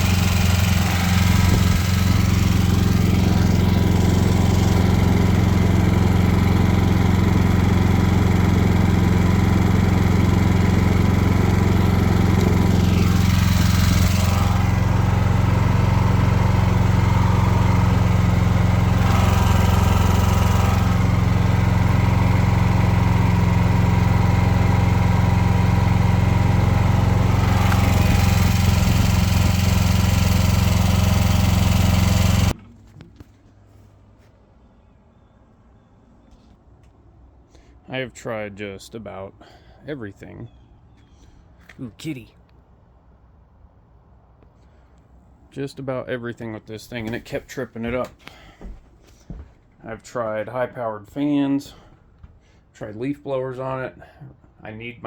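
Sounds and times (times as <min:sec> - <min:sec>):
generator engine running: 0:00.0 - 0:33.0.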